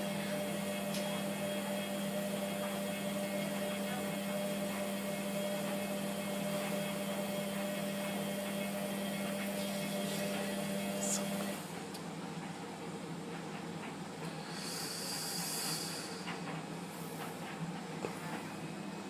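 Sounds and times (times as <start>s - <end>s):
washing machine humming: 0.0s - 19.0s.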